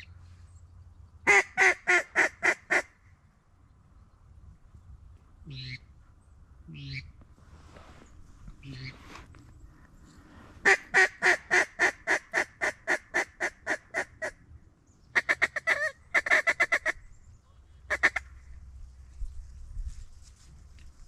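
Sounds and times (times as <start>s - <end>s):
duck call quacks: 1.3s - 2.9s, 10.6s - 14.4s, 15.2s - 17.0s, 17.9s - 18.3s.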